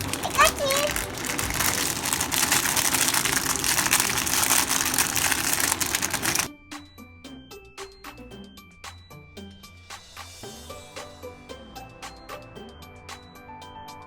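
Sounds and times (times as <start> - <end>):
plastic toys clattering: 0.0 - 6.5
light music with plinking notes: 6.5 - 9.8, 10.4 - 14.0.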